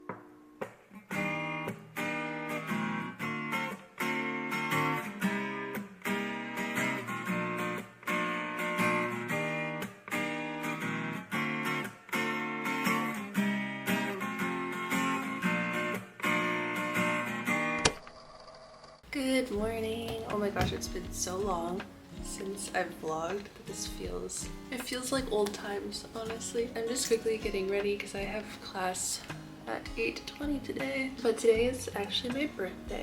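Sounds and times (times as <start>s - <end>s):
plucked guitar chords: 19.1s - 33.0s.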